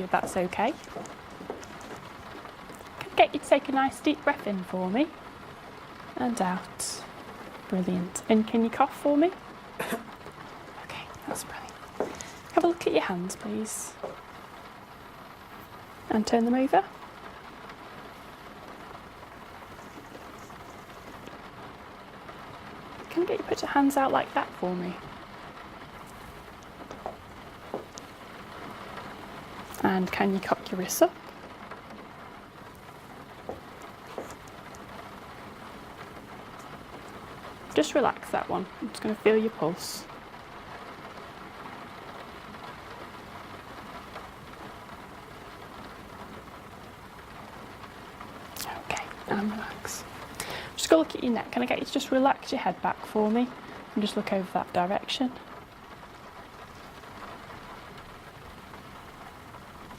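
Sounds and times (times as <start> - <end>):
rain falling: 0.0 - 59.9
raindrops ticking: 0.0 - 59.9
steady background hiss: 0.0 - 59.9.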